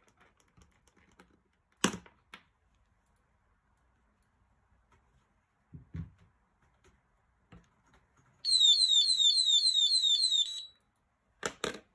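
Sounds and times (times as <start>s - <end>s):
electronic siren alarm: 8.5s - 10.7s.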